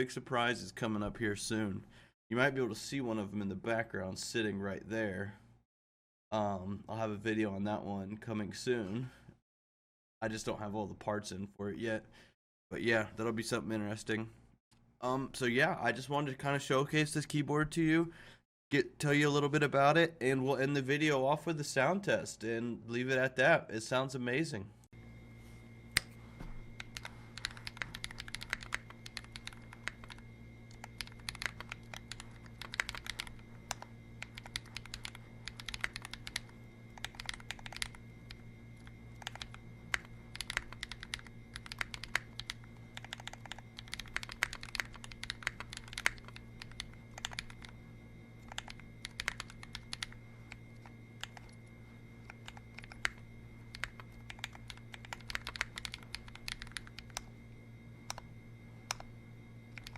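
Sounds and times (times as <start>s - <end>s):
low steady hum: 10.2s - 59.9s
mechanical keyboard typing: 26.8s - 38.4s, 39.1s - 47.8s, 48.4s - 50.2s, 50.8s - 51.6s, 52.2s - 57.3s.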